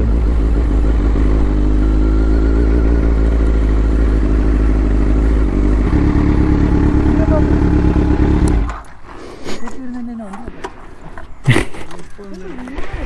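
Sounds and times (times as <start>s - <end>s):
motorcycle engine running: 0.0s - 8.9s.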